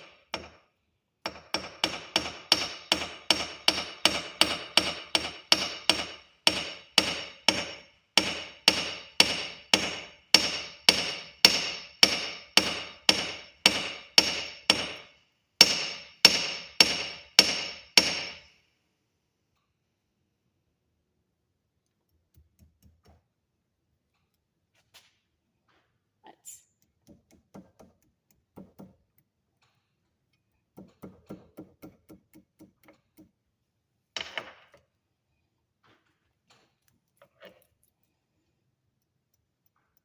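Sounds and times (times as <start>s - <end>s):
hammer striking wire on anvil: 0.0s - 18.6s, 30.7s - 33.4s.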